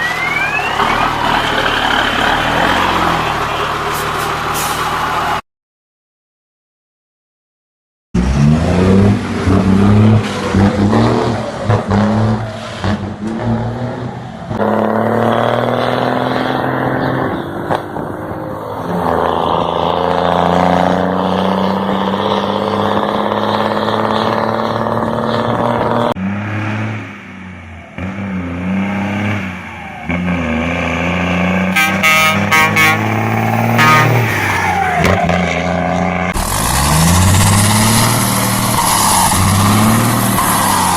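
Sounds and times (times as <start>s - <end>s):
truck diesel engine revving: 0.0s - 5.4s, 8.2s - 40.9s.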